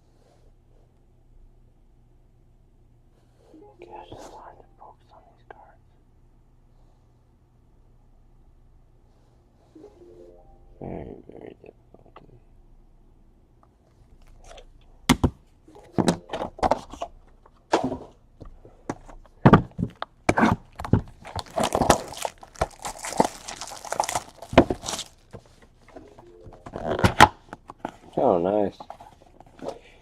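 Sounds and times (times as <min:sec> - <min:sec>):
packaging knocks and thunks: 0:19.4 - 0:25.5
packaging crinkling and tearing: 0:20.4 - 0:25.6.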